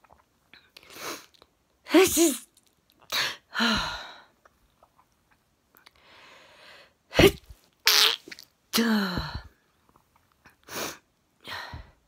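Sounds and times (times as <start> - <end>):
woman sneezing: 1.9 - 2.5, 7.1 - 8.2
woman breathing in: 6.0 - 7.0.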